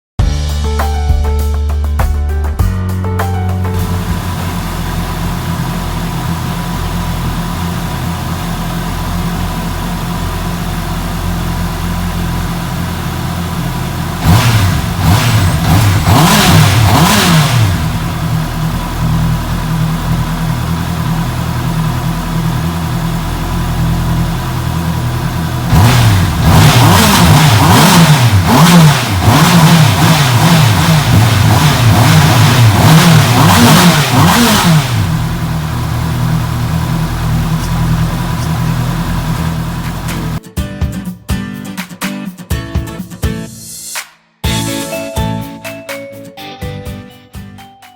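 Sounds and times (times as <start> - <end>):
motorcycle engine idling and revving: 3.8 - 40.4.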